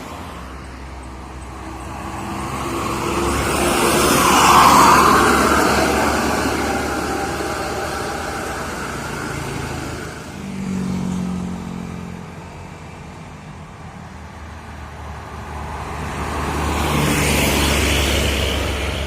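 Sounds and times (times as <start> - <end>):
vehicle engine passing: 0.0 - 12.6, 14.7 - 19.0
vehicle approaching: 0.0 - 19.0.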